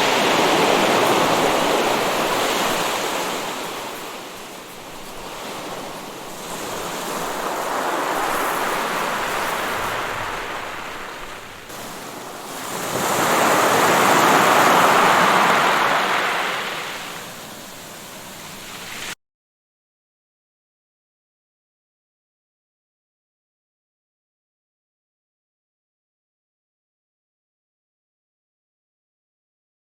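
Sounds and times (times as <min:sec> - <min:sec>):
waves washing onto shore: 0:00.0 - 0:19.2.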